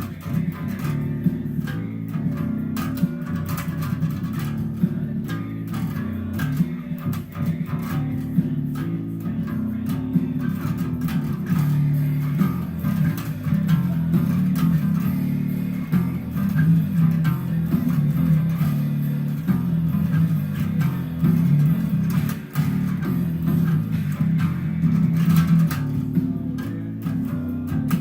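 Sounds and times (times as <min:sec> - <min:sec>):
bass guitar line: 0:00.0 - 0:28.0
quiet backing music: 0:00.0 - 0:28.0.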